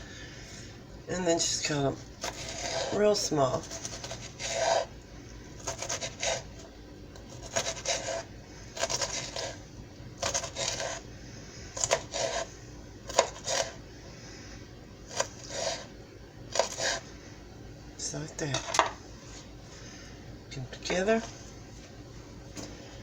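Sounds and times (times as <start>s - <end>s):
knife chopping on cutting board: 7.4s - 8.2s, 11.8s - 12.5s, 13.1s - 13.8s.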